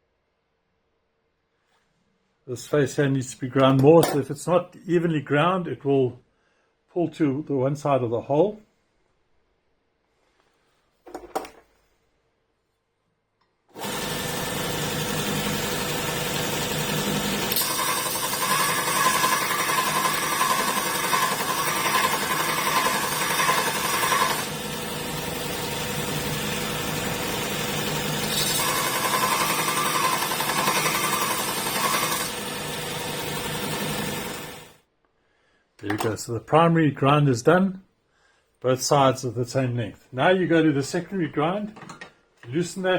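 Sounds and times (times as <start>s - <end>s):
drill bit grinding on belt: 13.8s - 34.7s
belt sharpener running: 13.8s - 34.8s.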